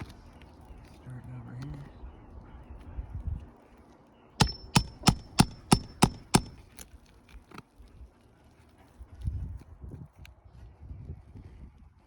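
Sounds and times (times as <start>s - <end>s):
hammer striking metal: 4.4s - 6.6s.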